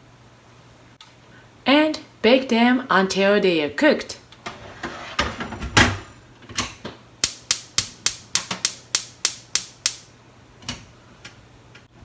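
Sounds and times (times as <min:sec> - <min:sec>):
gas stove igniter clicking: 0:07.2 - 0:11.4.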